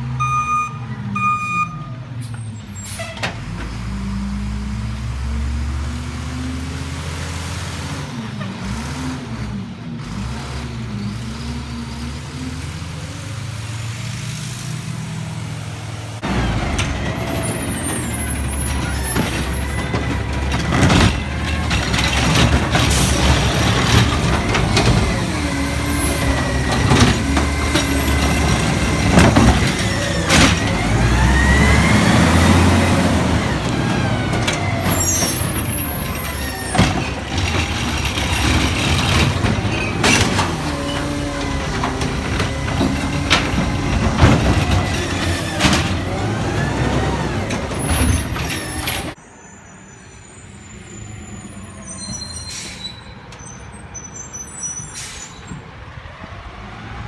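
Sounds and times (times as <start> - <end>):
garbage truck running: 0.0 - 49.5
air brake hiss: 52.3 - 53.2, 54.8 - 55.5.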